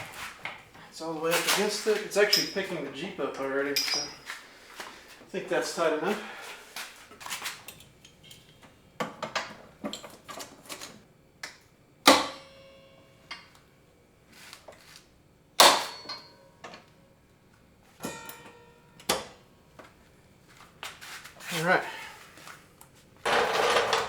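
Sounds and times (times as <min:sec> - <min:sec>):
steel tools clicking and rattling: 0:01.3 - 0:02.8, 0:03.4 - 0:04.3, 0:23.3 - 0:24.0.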